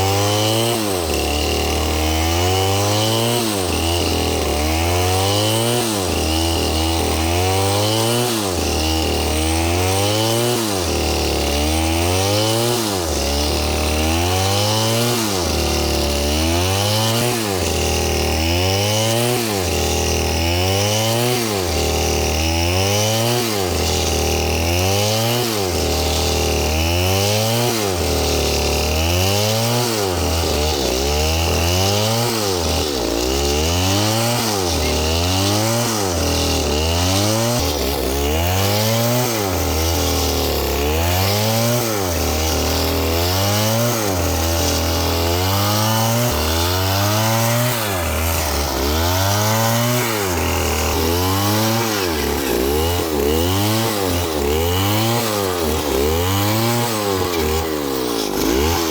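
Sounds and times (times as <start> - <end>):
chainsaw cutting wood: 0.0 - 58.9.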